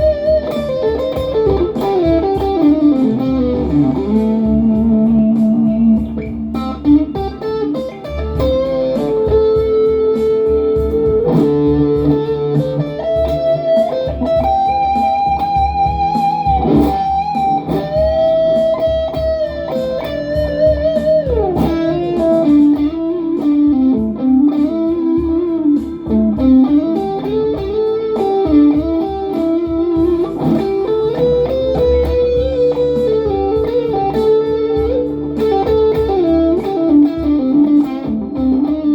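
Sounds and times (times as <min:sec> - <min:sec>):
electric guitar blues lead: 0:00.0 - 0:38.9.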